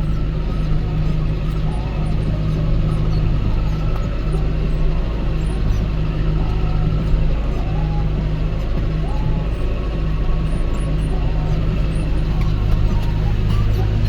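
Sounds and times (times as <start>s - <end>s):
tractor diesel engine droning: 0.0s - 14.0s.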